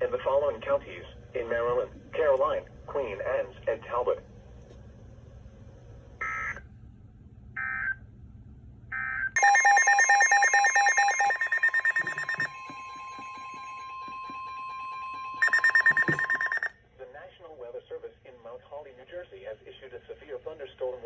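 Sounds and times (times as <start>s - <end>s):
electronic data chirps: 9.4s - 16.7s
pulsing electronic alert beeping: 9.4s - 16.7s
steady attention tone: 9.4s - 16.7s.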